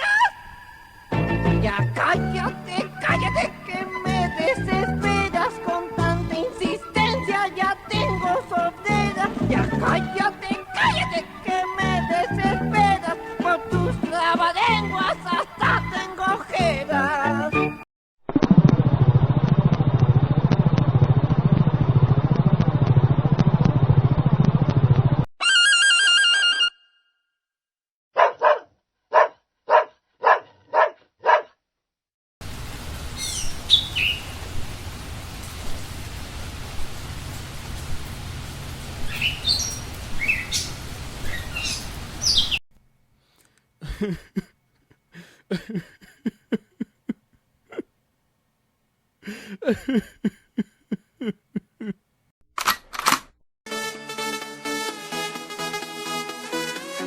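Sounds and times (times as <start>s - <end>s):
song with singing: 1.4s - 17.8s
steady rain: 32.4s - 42.4s
bird chirping: 33.2s - 34.4s, 39.1s - 42.6s.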